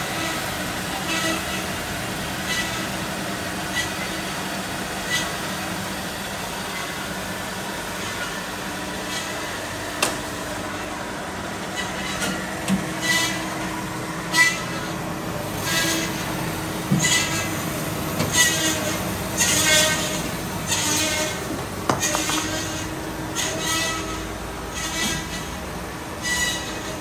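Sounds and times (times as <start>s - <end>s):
bandsaw motor hum: 8.7s - 27.0s.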